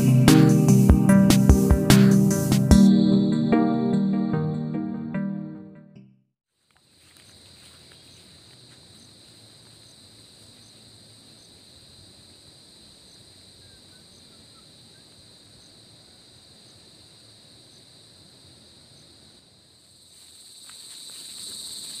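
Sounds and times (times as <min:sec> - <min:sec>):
low insect chirps: 0:06.6 - 0:22.0
high-pitched insect trill: 0:06.7 - 0:22.0.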